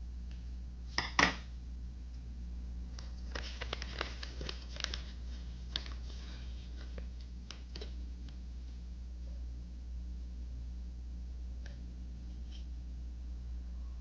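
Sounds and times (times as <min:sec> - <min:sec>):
steady low hum: 0:00.0 - 0:14.0
paper rustling and crinkling: 0:03.0 - 0:08.0.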